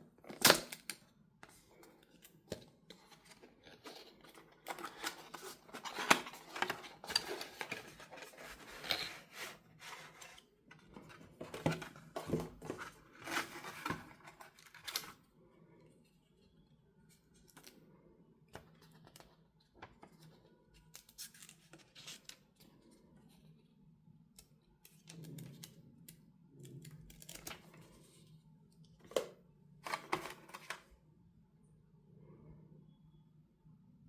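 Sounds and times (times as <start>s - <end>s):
packaging clicks and rustles: 0.2s - 15.2s, 29.0s - 30.9s.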